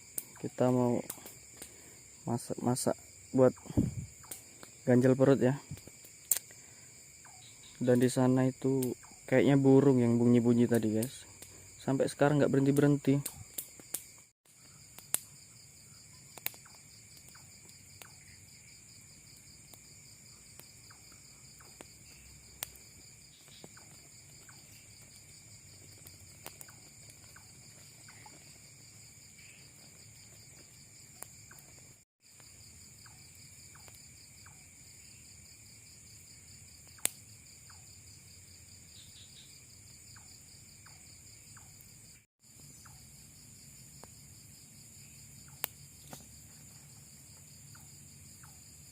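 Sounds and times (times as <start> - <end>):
crickets trilling: 0.0 - 48.9
sharp clicks: 5.7 - 6.5.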